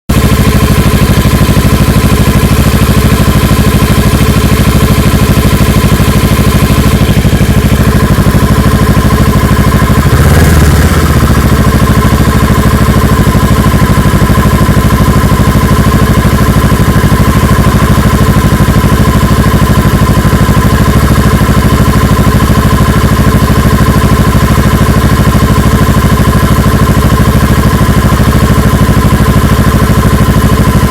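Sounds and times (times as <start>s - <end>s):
motorcycle engine idling: 0.1s - 30.9s
motorcycle engine revving: 0.1s - 30.9s.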